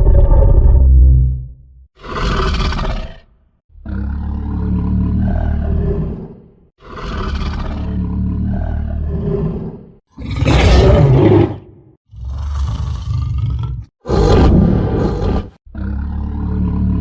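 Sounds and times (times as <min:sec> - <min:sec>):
deep growling monster roars: 0:00.0 - 0:17.0.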